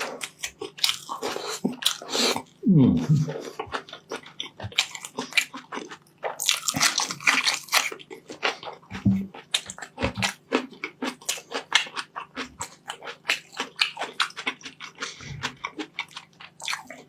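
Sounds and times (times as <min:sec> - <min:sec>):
person chewing food: 0:00.0 - 0:17.0.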